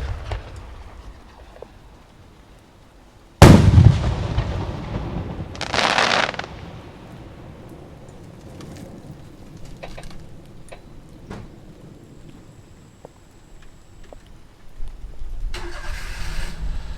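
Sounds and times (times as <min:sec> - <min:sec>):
firework hiss: 0:03.5 - 0:07.0.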